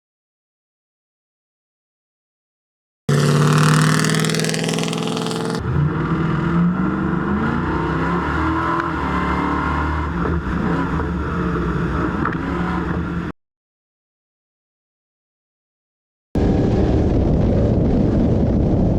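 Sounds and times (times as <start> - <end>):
truck engine accelerating: 3.1 - 13.3.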